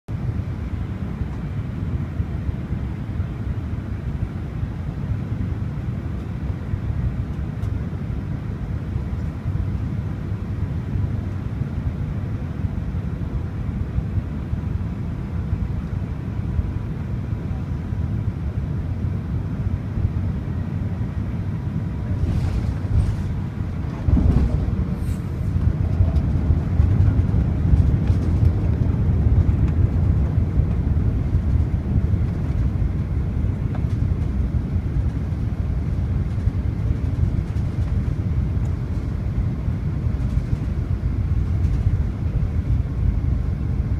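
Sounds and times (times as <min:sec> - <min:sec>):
jet engines rumbling: 0:00.2 - 0:43.9
wind on microphone: 0:21.9 - 0:43.4.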